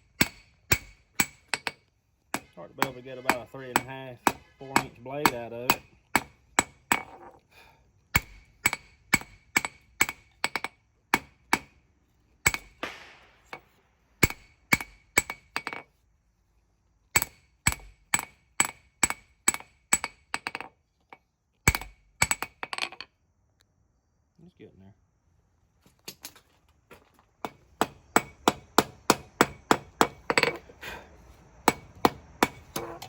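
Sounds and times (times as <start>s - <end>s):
hammer striking steel on anvil: 0.2s - 7.2s, 8.2s - 11.8s, 12.4s - 15.8s, 27.4s - 30.6s, 31.7s - 33.0s.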